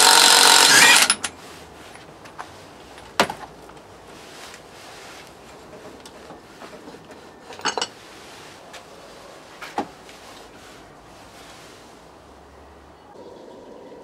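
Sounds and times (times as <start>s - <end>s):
metal tools clinking: 0.5s - 1.4s, 7.4s - 8.0s
low steady hiss: 1.1s - 14.0s.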